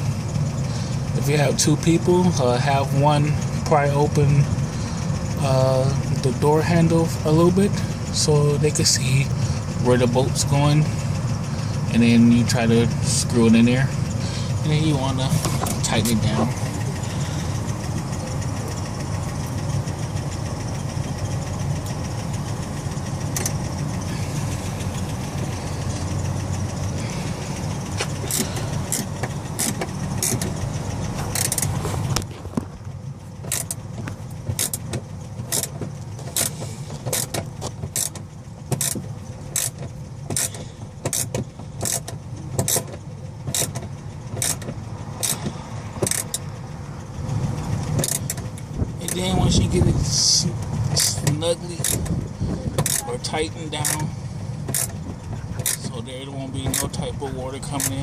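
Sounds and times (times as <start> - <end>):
steady low hum: 0.0 - 58.0
ratchet wrench clicking: 28.2 - 30.6, 31.3 - 31.7, 33.5 - 33.8, 34.6 - 34.9, 35.5 - 42.9, 43.5 - 46.4, 48.0 - 49.6, 50.9 - 52.2, 52.8 - 53.1, 54.7 - 55.0, 55.6 - 55.9.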